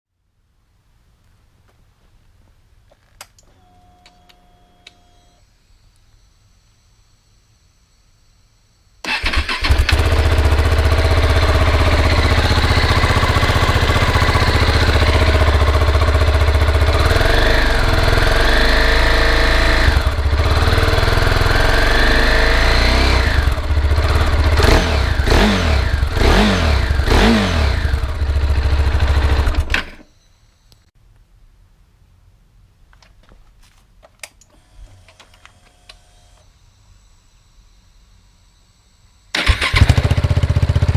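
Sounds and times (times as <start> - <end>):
motorcycle engine idling and revving: 9.1 - 30.1, 39.3 - 40.9.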